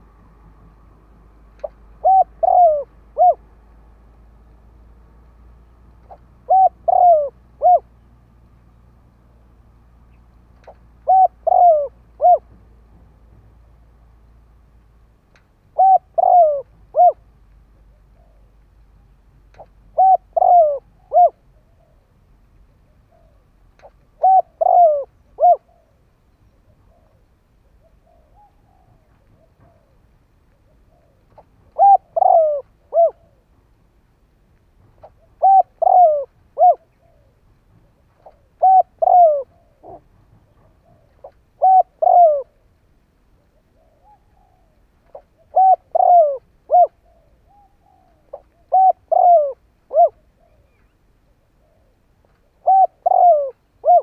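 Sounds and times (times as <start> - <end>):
dove cooing: 1.6 - 3.9, 6.0 - 8.0, 10.6 - 12.6, 15.6 - 18.6, 19.5 - 33.6, 34.9 - 42.8, 43.4 - 54.0.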